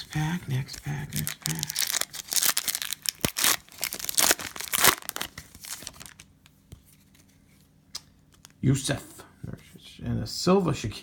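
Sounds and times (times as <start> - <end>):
cellophane wrapper tearing and crinkling: 0.7 - 6.3.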